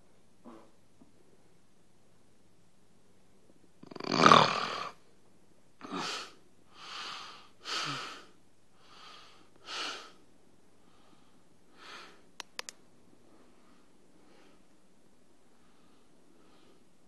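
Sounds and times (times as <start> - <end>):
man snorting snore: 3.8 - 5.0.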